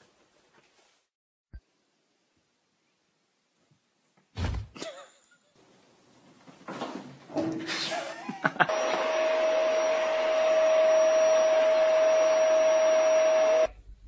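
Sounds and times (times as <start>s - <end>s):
appliance motor whining: 8.7s - 13.7s.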